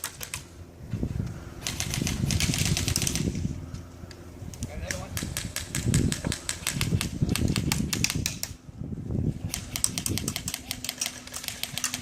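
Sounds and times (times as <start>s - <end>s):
airsoft guns firing: 1.6s - 3.4s.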